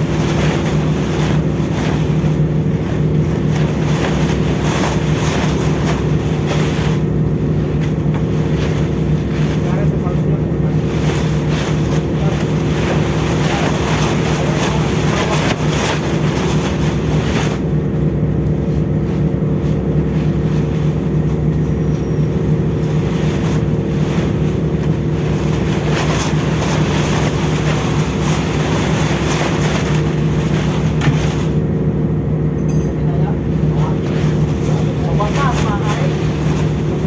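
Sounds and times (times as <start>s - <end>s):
ship machinery drone: 0.0s - 37.0s.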